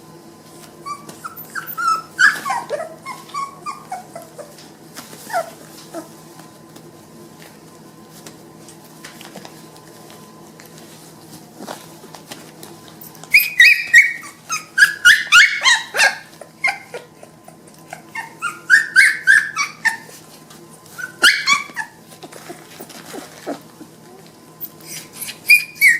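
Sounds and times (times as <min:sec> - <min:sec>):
puppies whining and yelping: 0:00.6 - 0:06.2, 0:13.0 - 0:25.9.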